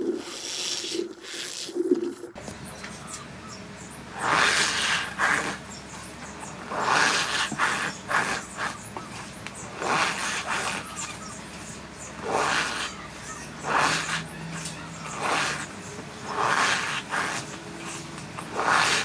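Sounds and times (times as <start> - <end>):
cornstarch squeaky crunches: 4.2 - 19.0.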